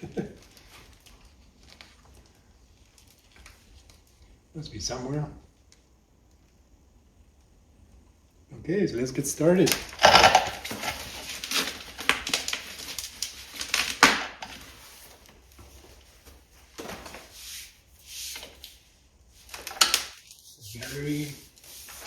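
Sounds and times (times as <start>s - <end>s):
packaging rustling and crinkling: 0.0s - 4.5s, 9.6s - 22.0s.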